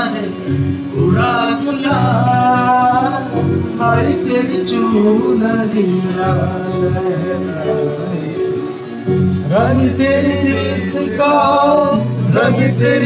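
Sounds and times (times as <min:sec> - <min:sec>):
song with singing: 0:00.0 - 0:13.0.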